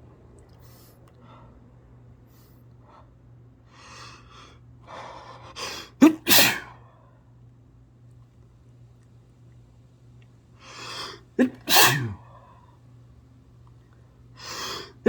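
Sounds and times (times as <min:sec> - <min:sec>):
person sneezing: 0:05.6 - 0:06.8, 0:10.9 - 0:12.2.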